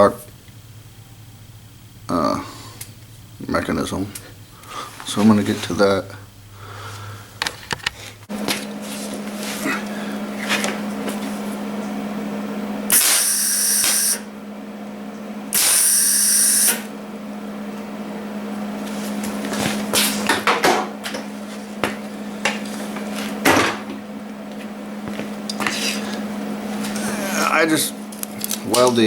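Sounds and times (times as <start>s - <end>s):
low hum: 0.0s - 29.0s
handheld power tool cutting: 12.9s - 14.3s, 15.5s - 16.9s.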